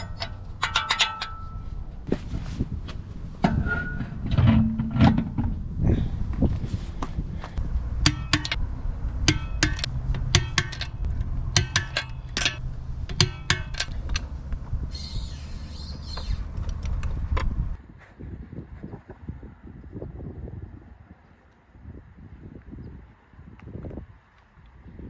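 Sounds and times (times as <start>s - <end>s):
metal parts clinking: 0.0s - 1.8s, 8.1s - 8.6s, 9.3s - 14.3s
tools being handled: 0.0s - 1.8s, 9.3s - 14.3s
steady low hum: 0.0s - 17.9s.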